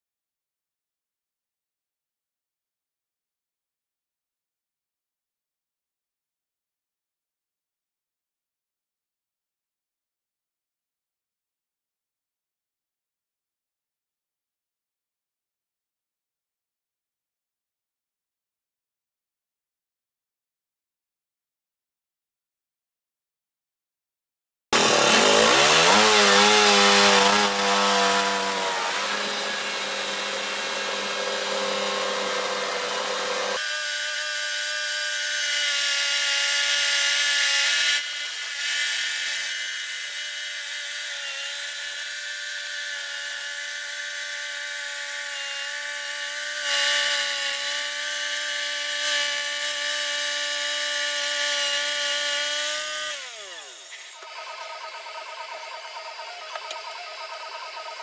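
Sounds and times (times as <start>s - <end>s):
saw blade hissing through wood: 24.8s - 33.8s, 52.4s - 58.0s
sawmill motor running: 24.8s - 58.0s.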